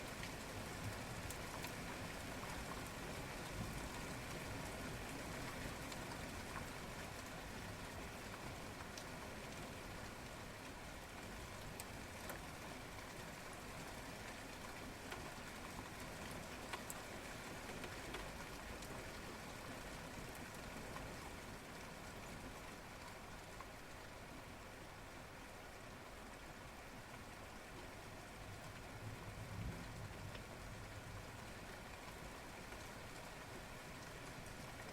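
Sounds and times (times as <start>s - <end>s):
steady rain hiss: 0.0s - 34.9s.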